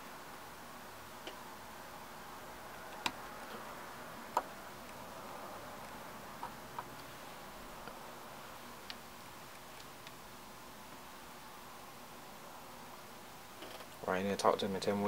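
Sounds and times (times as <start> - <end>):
faint steady hiss: 0.0 - 15.0.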